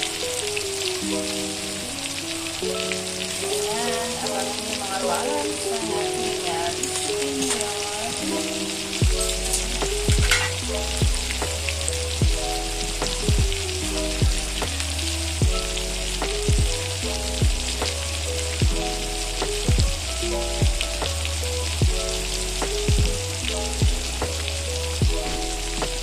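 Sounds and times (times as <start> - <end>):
chicken wings sizzling in oil: 2.9 - 20.2
background music with kick drum: 8.8 - 26.0.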